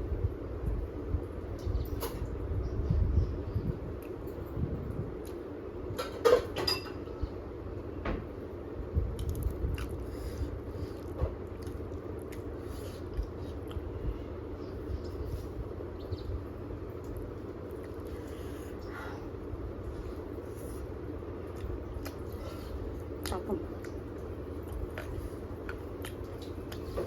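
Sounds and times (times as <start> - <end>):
low room hum: 0.0 - 27.0
chewing and mouth noises: 9.1 - 13.9, 21.4 - 27.0.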